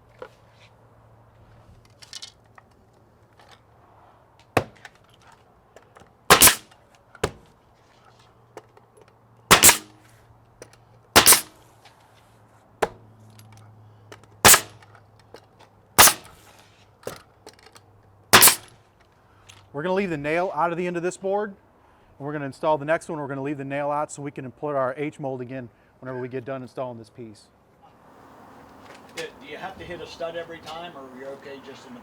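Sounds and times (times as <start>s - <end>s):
nail gun shots: 6.3s - 7.4s, 9.5s - 10.0s, 11.2s - 11.6s, 14.4s - 14.8s, 16.0s - 16.4s, 18.4s - 18.8s.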